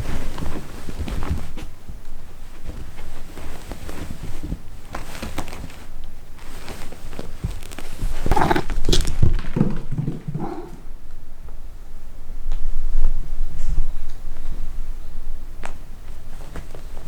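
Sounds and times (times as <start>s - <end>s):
paws thumping and scuffling on floor: 0.0s - 1.7s, 2.4s - 10.8s.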